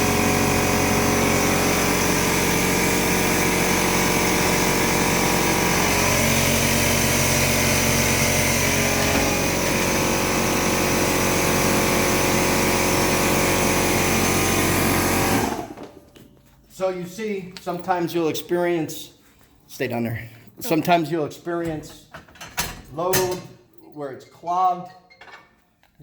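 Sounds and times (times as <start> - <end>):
air compressor motor drone: 0.0 - 15.9.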